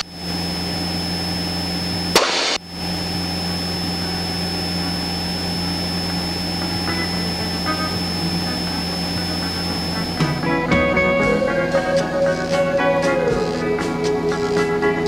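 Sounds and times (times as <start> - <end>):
radio squelch hiss: 0.0 - 2.6
aircraft engine droning: 0.0 - 15.0.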